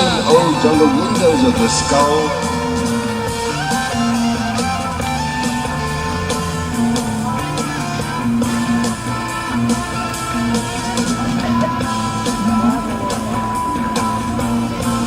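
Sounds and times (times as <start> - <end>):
person reading aloud: 0.0 - 2.8
guitar music over steady beat: 0.0 - 15.0.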